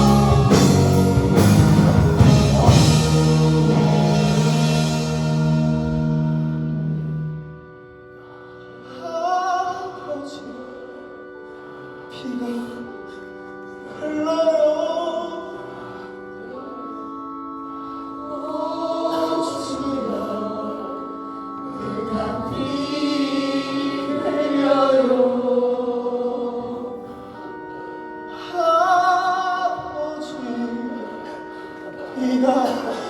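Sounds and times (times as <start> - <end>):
voices singing gospel-style song: 0.0 - 7.2, 17.8 - 33.0
held accompaniment chords: 0.0 - 33.0.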